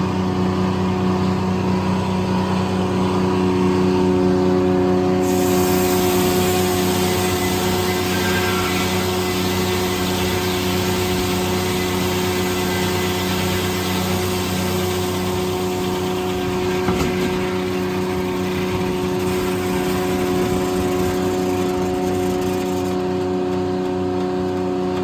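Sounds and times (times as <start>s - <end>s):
sawmill drone: 0.0s - 25.0s
saw blade hissing through log: 5.2s - 16.9s.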